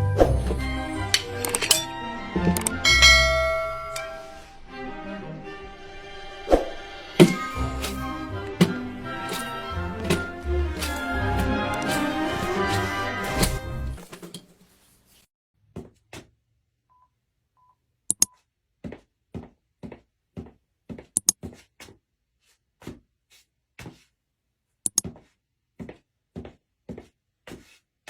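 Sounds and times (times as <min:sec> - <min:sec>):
music: 0:00.0 - 0:14.0
soft footsteps on a stage: 0:18.8 - 0:22.0, 0:25.1 - 0:27.8.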